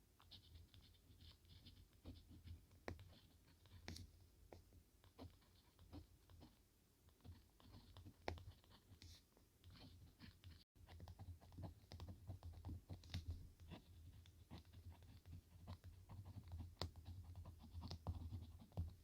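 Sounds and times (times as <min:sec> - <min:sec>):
small taps and clicks: 0:07.9 - 0:19.0.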